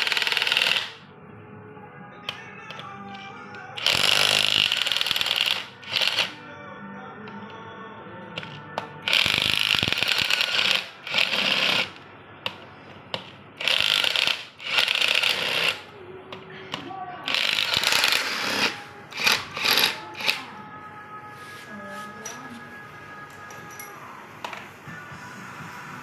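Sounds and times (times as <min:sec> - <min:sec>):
faint background music: 0:00.0 - 0:26.0
harsh hissing mechanical noise: 0:17.3 - 0:20.6, 0:24.0 - 0:26.0.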